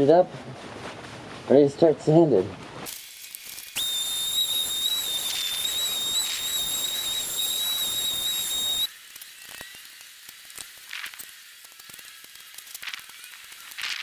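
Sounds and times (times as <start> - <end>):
power sander whining: 3.7 - 8.9.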